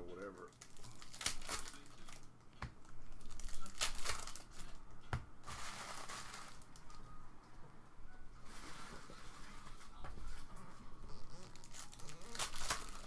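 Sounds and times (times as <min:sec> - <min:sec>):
plastic packaging crinkling and tearing: 0:00.2 - 0:02.3, 0:03.1 - 0:04.8, 0:05.4 - 0:07.0, 0:11.1 - 0:13.0.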